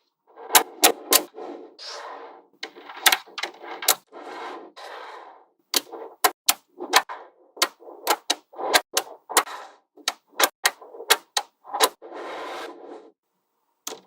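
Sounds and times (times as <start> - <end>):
balls rattling and scraping: 0.0 - 13.2
magnetic balls clicking together: 5.7 - 11.6.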